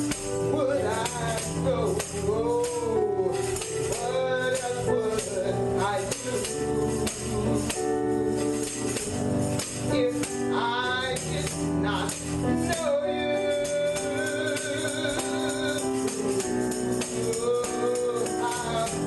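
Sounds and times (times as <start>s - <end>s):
person singing gospel: 0.0s - 19.0s
tambourine shaking: 0.0s - 19.0s.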